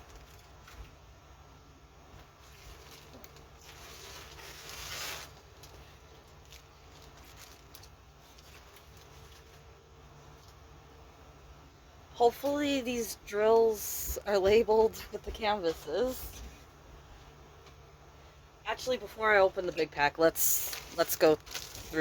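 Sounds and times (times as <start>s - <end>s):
plastic packaging handled: 0.0s - 1.0s, 2.2s - 10.7s, 19.7s - 22.0s
plastic rustle: 0.0s - 1.1s, 2.2s - 10.7s, 19.6s - 22.0s.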